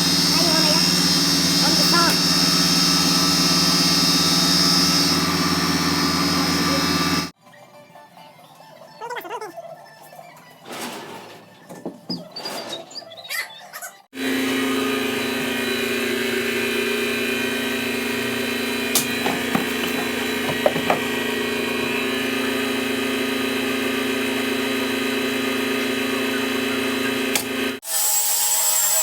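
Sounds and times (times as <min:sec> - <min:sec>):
small motor humming: 0:00.0 - 0:07.4, 0:14.2 - 0:29.0.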